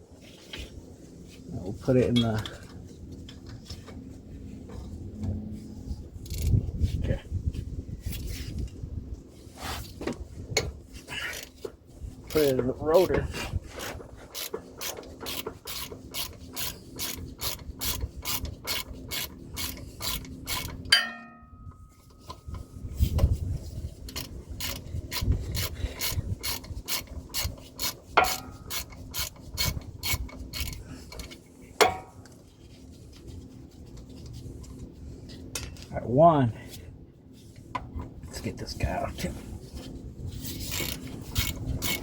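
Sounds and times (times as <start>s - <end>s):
hand ratchet clicking: 14.3s - 21.0s, 24.1s - 31.4s, 40.6s - 42.0s
sharp metal knocks: 20.9s - 21.8s, 28.2s - 28.7s, 31.8s - 32.2s
metallic clank: 20.9s - 22.0s, 31.8s - 32.2s.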